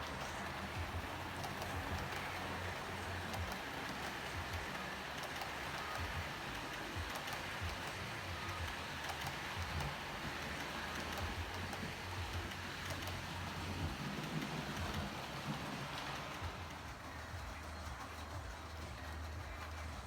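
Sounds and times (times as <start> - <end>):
model train wheels hissing on track: 0.0 - 20.0.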